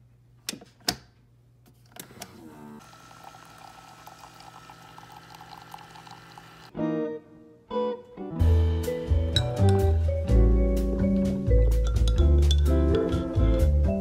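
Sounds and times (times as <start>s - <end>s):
coffee machine humming: 2.2s - 6.7s
hot water streaming into cup: 2.8s - 6.7s.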